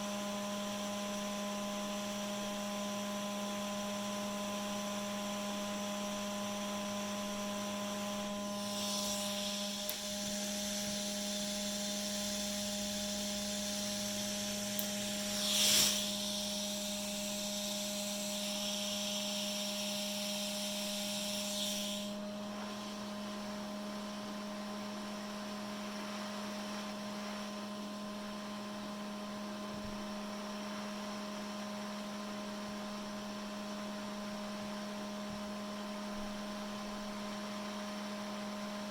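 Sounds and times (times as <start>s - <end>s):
electrical mains hum: 0.0s - 38.9s
high hiss: 8.4s - 22.2s.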